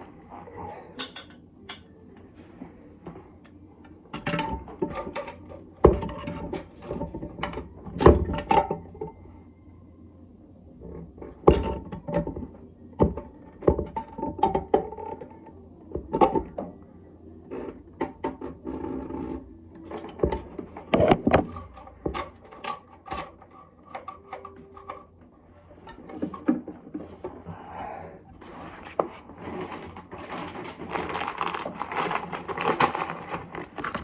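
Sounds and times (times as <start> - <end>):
knocks and clunks of tools: 19.9 - 25.1.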